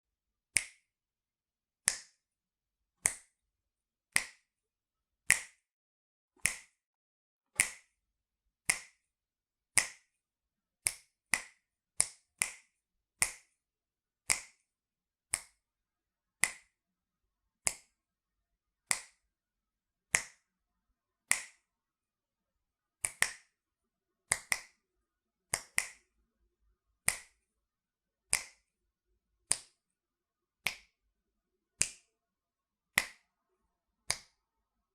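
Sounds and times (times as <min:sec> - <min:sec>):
finger snaps: 0:00.5 - 0:00.9, 0:01.8 - 0:02.2, 0:03.0 - 0:03.4, 0:04.1 - 0:04.5, 0:05.3 - 0:05.7, 0:06.4 - 0:06.8, 0:07.6 - 0:08.0, 0:08.6 - 0:09.1, 0:09.8 - 0:10.2, 0:10.8 - 0:13.6, 0:14.3 - 0:14.7, 0:15.3 - 0:15.6, 0:16.4 - 0:16.8, 0:17.6 - 0:18.0, 0:18.9 - 0:19.3, 0:20.1 - 0:20.5, 0:21.3 - 0:21.7, 0:23.0 - 0:23.6, 0:24.3 - 0:24.8, 0:25.5 - 0:26.1, 0:27.0 - 0:27.5, 0:28.3 - 0:28.8, 0:29.4 - 0:29.9, 0:30.6 - 0:31.0, 0:31.8 - 0:32.2, 0:32.9 - 0:33.3, 0:34.0 - 0:34.4.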